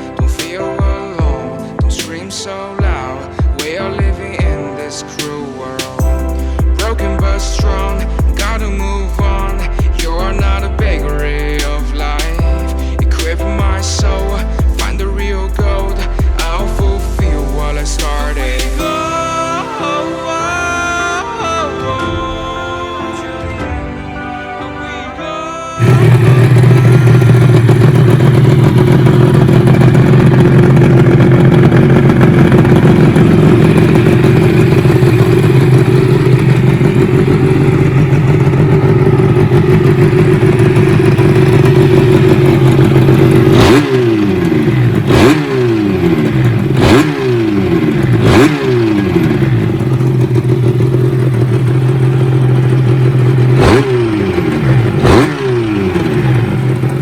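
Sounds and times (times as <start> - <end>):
two-stroke motorcycle engine revving: 25.8 - 57.0.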